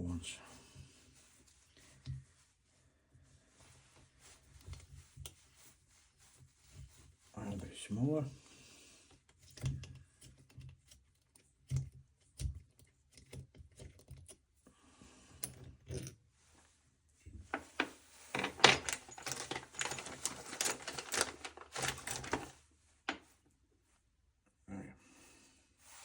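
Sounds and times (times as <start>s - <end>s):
metal screws clicking and rattling: 18.4s - 22.5s.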